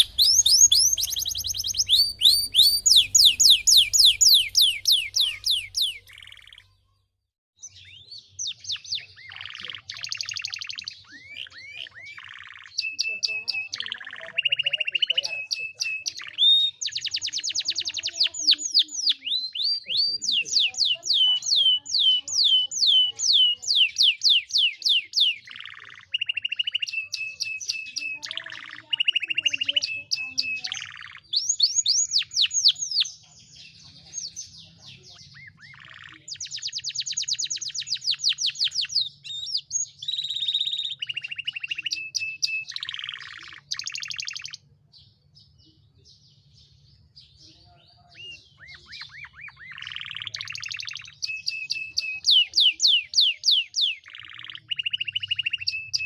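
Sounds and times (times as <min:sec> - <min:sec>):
canary singing trills and whistles: 0:00.0 - 0:07.0, 0:07.6 - 0:56.0.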